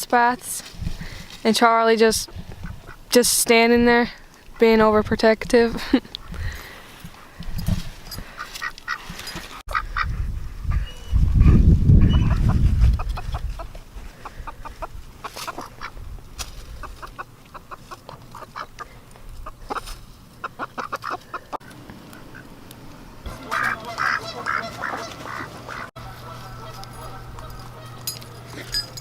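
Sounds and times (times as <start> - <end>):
chickens clucking: 2.2 - 3.1, 8.2 - 16.0, 16.7 - 22.5, 23.3 - 28.5
ducks quacking: 2.2 - 3.2, 8.2 - 10.9, 16.8 - 22.5, 23.3 - 28.1.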